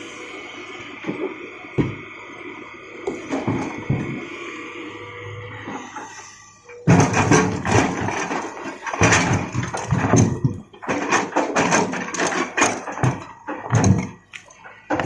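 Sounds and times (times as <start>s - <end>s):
rocks crashing into steel bucket: 6.9s - 14.3s.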